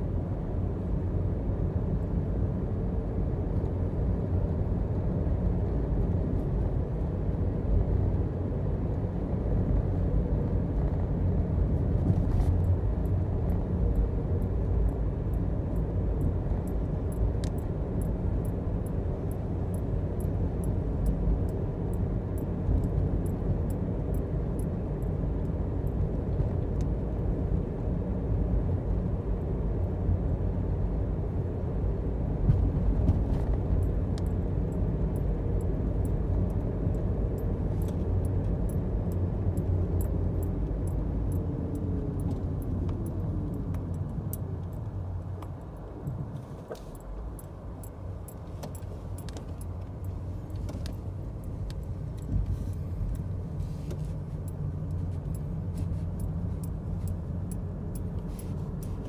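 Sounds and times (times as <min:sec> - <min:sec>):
vehicle engine rumbling: 0:00.0 - 0:59.0
light ticks and rattles: 0:32.9 - 0:59.0.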